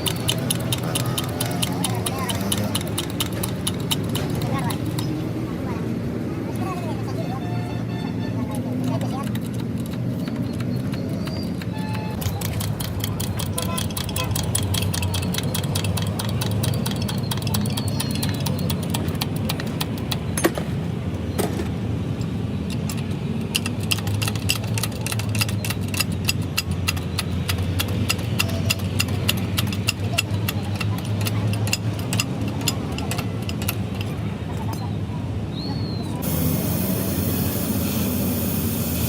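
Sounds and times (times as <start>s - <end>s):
rapid clicking rattle: 0.0s - 5.1s, 12.1s - 20.3s.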